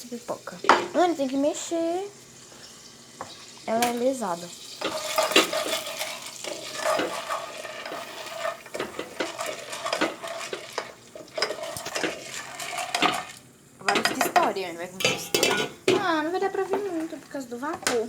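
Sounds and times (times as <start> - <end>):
butter sizzling: 0.0 - 18.0
spoon scraping a pot: 0.6 - 1.0, 4.7 - 18.0.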